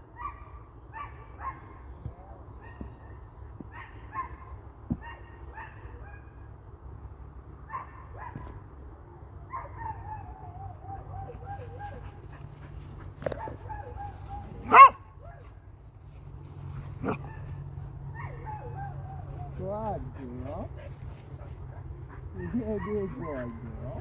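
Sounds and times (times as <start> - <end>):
dog barking: 0.2 - 1.8, 13.2 - 15.6, 17.0 - 24.0.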